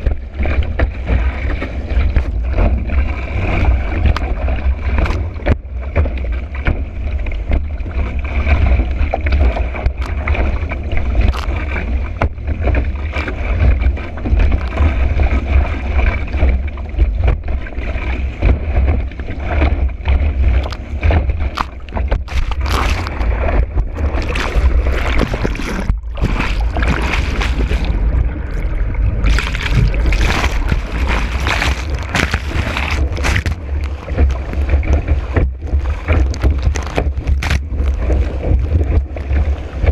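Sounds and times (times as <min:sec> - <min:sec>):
board slapping on water: 0:00.0 - 0:39.9
wind buffeting camera: 0:18.4 - 0:39.9
water rushing and hissing: 0:19.8 - 0:39.9.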